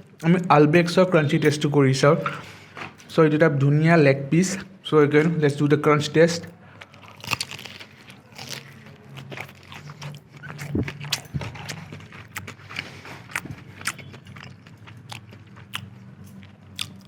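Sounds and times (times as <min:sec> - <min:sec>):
crunchy chicken chewing: 0:06.7 - 0:17.0.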